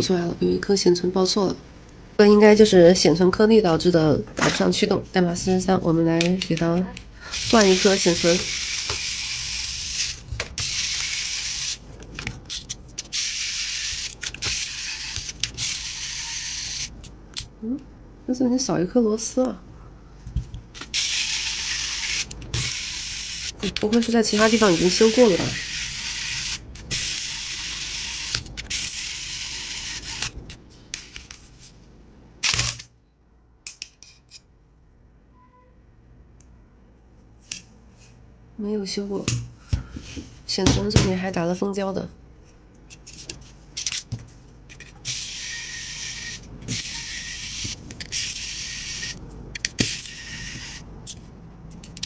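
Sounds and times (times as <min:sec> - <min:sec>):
compressed air hissing: 0:07.2 - 0:11.8.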